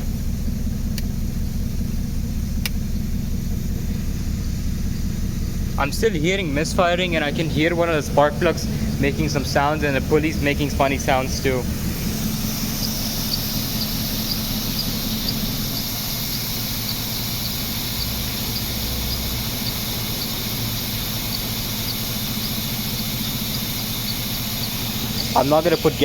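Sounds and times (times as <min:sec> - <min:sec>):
engine idling with misfire: 0:00.0 - 0:26.0
faint high chirp: 0:12.8 - 0:26.0.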